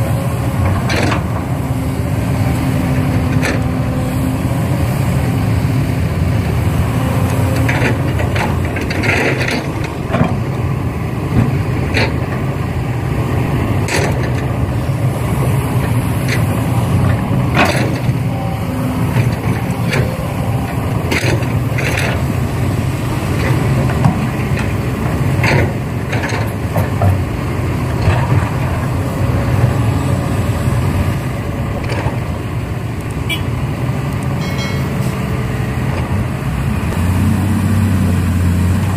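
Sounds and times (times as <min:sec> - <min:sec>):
engine running low rumble: 0:00.0 - 0:38.9
sharp metallic clanks and knocks: 0:34.3 - 0:35.3.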